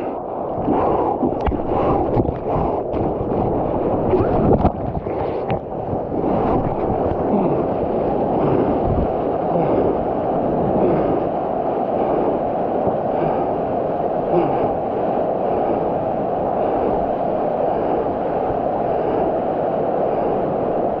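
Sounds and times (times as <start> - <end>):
muffled wind on microphone: 0.0 - 21.0
surf water rushing: 0.0 - 21.0.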